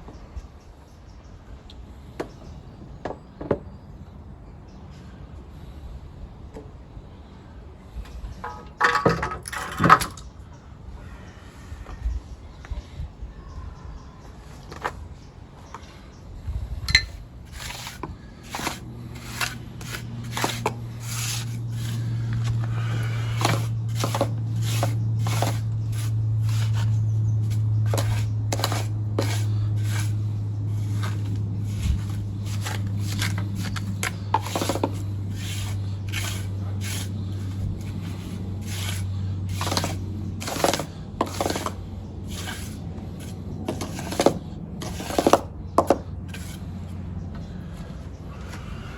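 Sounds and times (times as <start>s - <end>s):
steady low hum: 3.8s - 48.9s
scraping and rubbing strokes: 16.7s - 48.6s.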